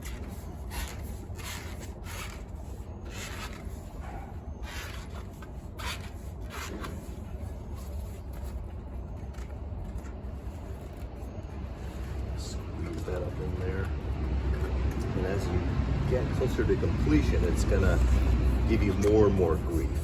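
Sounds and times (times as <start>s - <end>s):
rubber tire scraping against rim: 0.0s - 13.9s, 16.4s - 20.0s
steady low hum: 0.0s - 20.0s.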